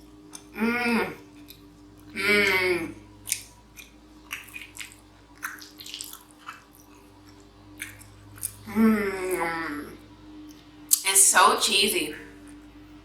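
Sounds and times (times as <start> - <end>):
sticky wet food squishes: 0.0 - 11.1.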